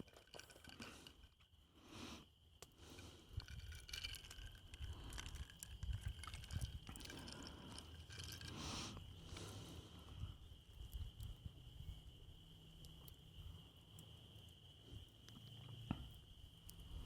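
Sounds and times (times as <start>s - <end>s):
small clicks and scrapes: 0.0s - 1.5s, 2.6s - 9.5s
high-pitched insect trill: 0.0s - 17.0s.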